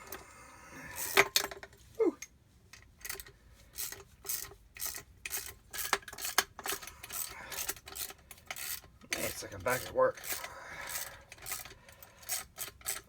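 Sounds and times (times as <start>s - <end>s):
socket ratchet rasping: 2.8s - 13.0s.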